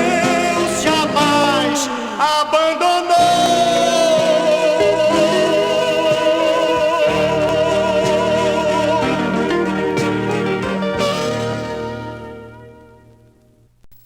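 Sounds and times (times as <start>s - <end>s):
band accompaniment: 0.0s - 2.1s, 3.2s - 13.2s
held sung note with vibrato: 0.0s - 12.1s.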